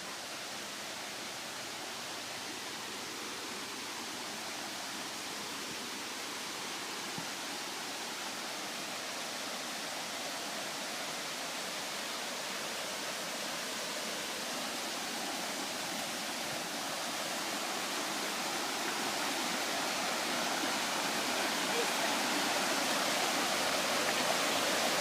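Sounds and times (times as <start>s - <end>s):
river water rushing: 0.0s - 25.0s.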